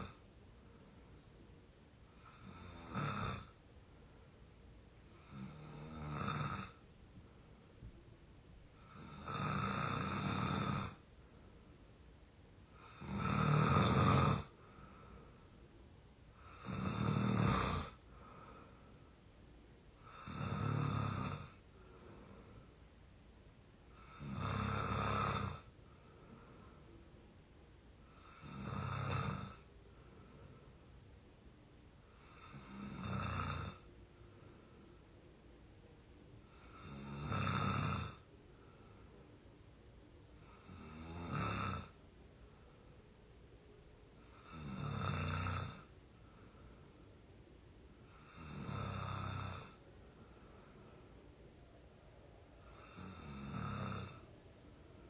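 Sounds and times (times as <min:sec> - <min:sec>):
person snoring: 0:02.1 - 0:03.6, 0:05.2 - 0:06.8, 0:08.8 - 0:11.0, 0:12.8 - 0:15.2, 0:16.4 - 0:18.7, 0:20.0 - 0:22.6, 0:23.9 - 0:26.7, 0:28.1 - 0:29.7, 0:32.2 - 0:33.9, 0:36.4 - 0:38.3, 0:40.4 - 0:42.0, 0:44.2 - 0:45.9, 0:48.1 - 0:49.8, 0:52.6 - 0:54.3.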